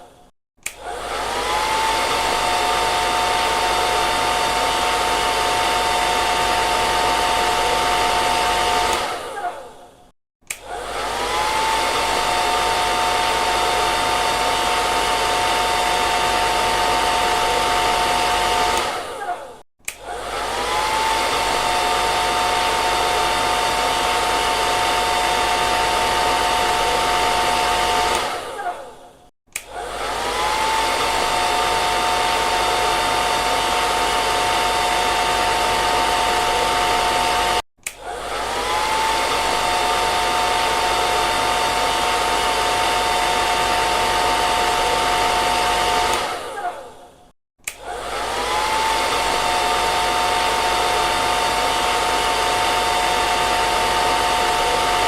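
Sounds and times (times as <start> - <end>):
hair dryer blowing: 0.0 - 9.8, 10.4 - 55.0.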